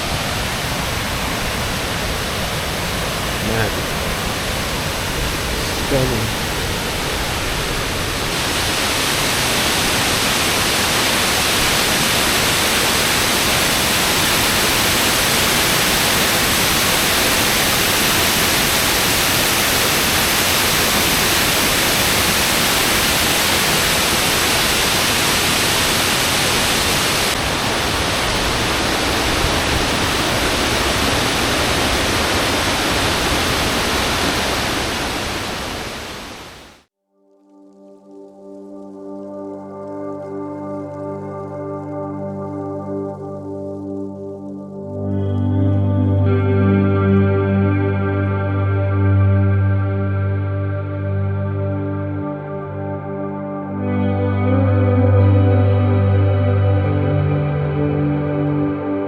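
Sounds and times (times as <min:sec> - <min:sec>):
waterfall rushing: 0:00.0 - 0:36.9.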